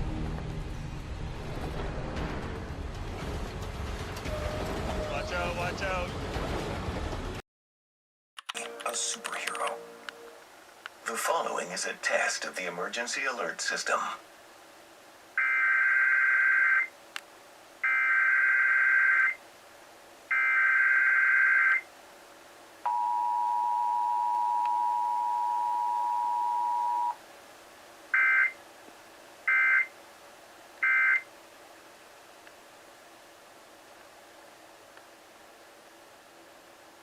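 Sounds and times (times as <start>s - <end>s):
two-tone attention signal: 4.3s - 5.5s, 22.9s - 27.2s.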